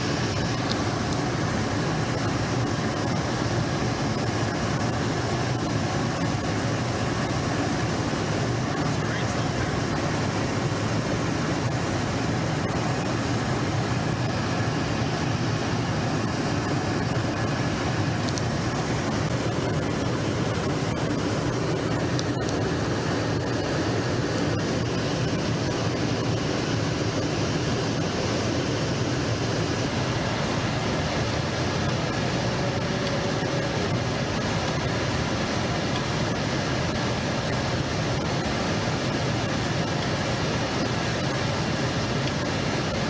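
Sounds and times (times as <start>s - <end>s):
jet aircraft in flight: 0.0s - 43.0s.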